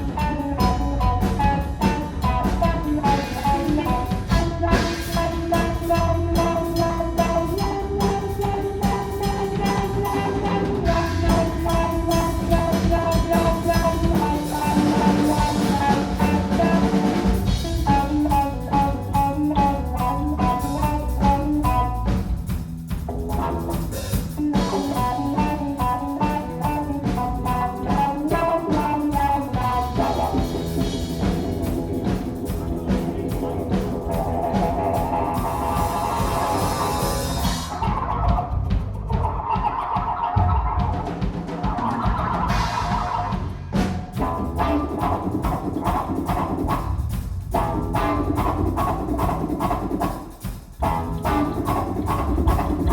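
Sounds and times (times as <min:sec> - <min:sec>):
bass guitar: 0:00.0 - 0:52.9
drum kit: 0:00.0 - 0:52.9
guitar melody: 0:00.0 - 0:52.9.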